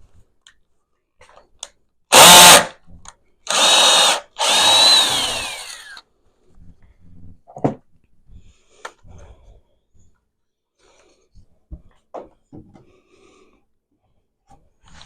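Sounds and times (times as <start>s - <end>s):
power drill whine: 2.1s - 2.7s, 3.5s - 6.0s.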